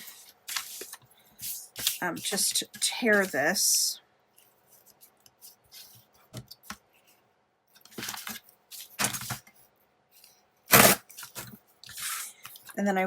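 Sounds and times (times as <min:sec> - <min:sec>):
paper rustling: 0:00.0 - 0:03.4, 0:04.3 - 0:12.8
paper ripping: 0:10.7 - 0:12.3.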